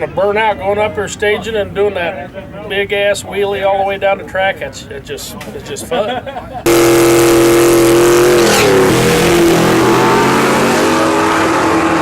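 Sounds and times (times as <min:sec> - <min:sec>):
drag racing car engine revving: 0:06.7 - 0:12.0.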